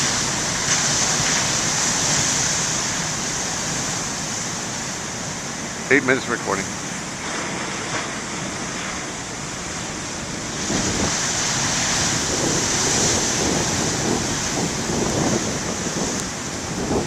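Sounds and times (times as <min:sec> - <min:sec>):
ocean waves breaking: 0:00.0 - 0:17.0
wind on microphone: 0:07.2 - 0:17.0.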